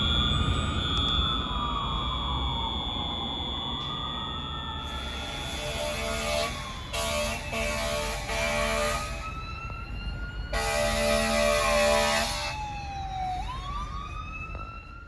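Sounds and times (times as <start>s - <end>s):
fire engine siren wailing: 0.0s - 15.0s
air horn blasts: 4.9s - 9.4s, 10.5s - 12.6s.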